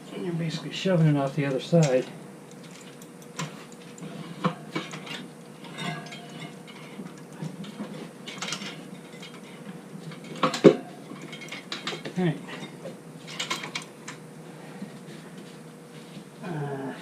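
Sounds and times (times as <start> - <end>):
metal tools clicking and scraping: 1.8 - 14.2.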